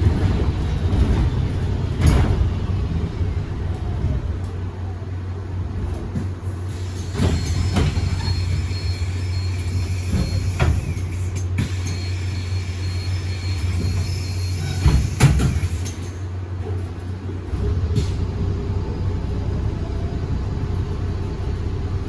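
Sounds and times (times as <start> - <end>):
bus engine drone: 0.0 - 22.0.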